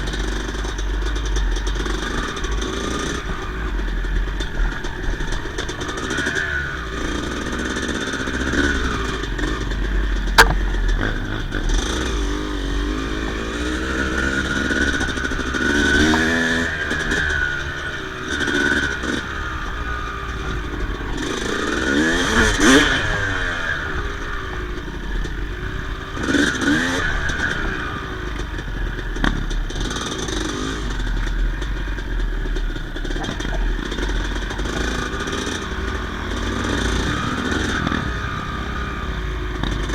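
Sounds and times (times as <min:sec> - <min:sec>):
dirt bike engine revving: 0:01.2 - 0:39.9
sharp click: 0:10.4 - 0:10.7.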